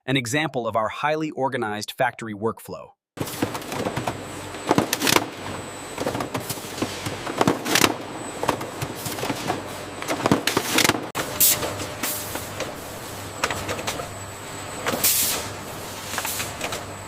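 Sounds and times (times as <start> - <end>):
machine clacks and knocks: 3.2 - 11.1
machinery hum and hiss: 3.2 - 17.0.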